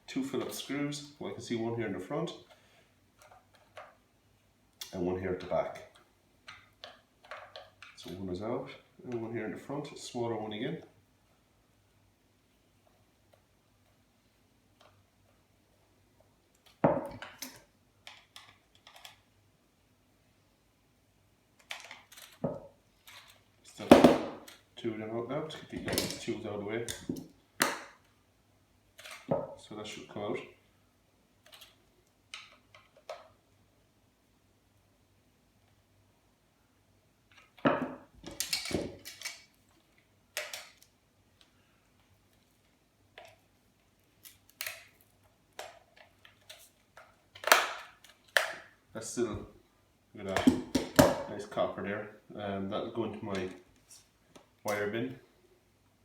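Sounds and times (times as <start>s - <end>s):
tools and metal parts clattering: 38.2s - 39.4s.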